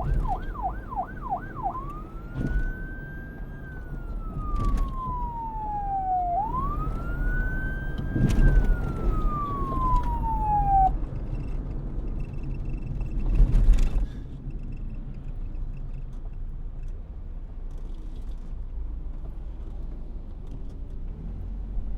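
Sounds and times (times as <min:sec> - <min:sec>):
police siren wail: 0:00.0 - 0:11.0
low vehicle engine rumble: 0:00.0 - 0:21.9.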